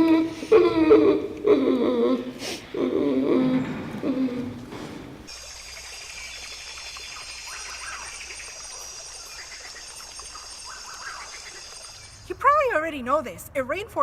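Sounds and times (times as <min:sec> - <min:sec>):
insects droning: 0:05.3 - 0:12.8
chirping animal calls: 0:05.5 - 0:12.3.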